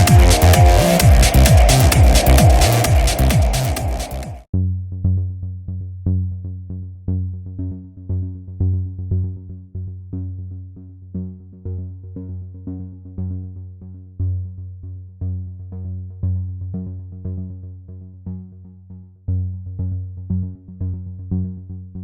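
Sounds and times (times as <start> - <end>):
busier electronic track: 0.0 - 4.4
synthesizer plucked notes: 0.0 - 4.4
steady bass line: 0.0 - 4.5.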